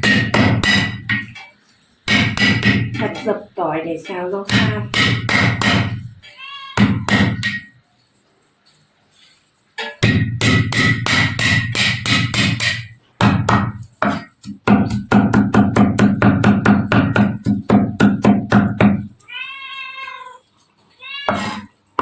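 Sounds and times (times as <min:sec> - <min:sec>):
knife chopping on board: 0:00.0 - 0:01.3, 0:02.1 - 0:03.2, 0:04.5 - 0:06.1, 0:06.8 - 0:07.7, 0:10.0 - 0:19.1, 0:21.3 - 0:21.6
cat meowing: 0:06.2 - 0:07.1, 0:19.2 - 0:21.7.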